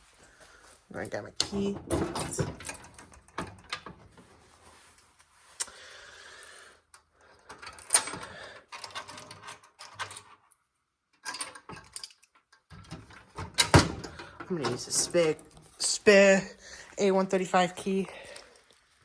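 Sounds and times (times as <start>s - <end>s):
rummaging clicks and knocks: 1.0s - 4.3s, 7.0s - 10.5s, 11.2s - 15.8s.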